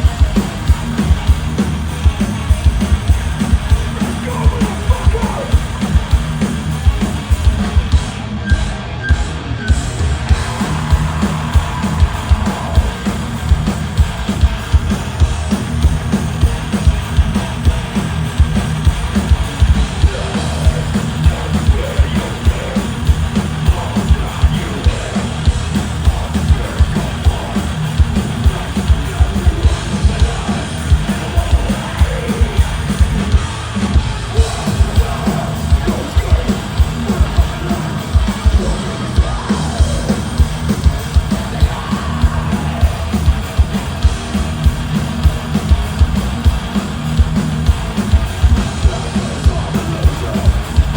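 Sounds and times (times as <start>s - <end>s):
distorted guitars and bass: 0.0s - 50.9s
fast pounding drums: 0.0s - 50.9s
shouted vocals: 3.6s - 6.2s, 10.1s - 14.3s, 19.7s - 33.6s, 34.2s - 44.3s, 48.4s - 50.9s.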